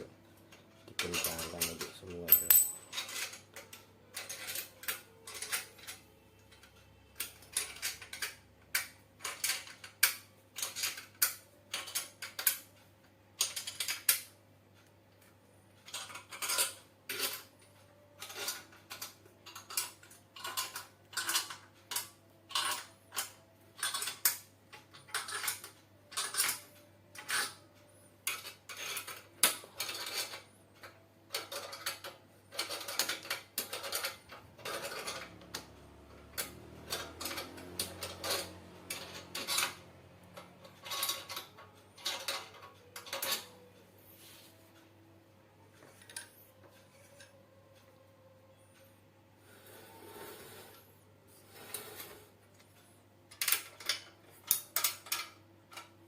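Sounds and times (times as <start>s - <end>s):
hand tool clinking on metal bolts: 1.0s - 5.9s.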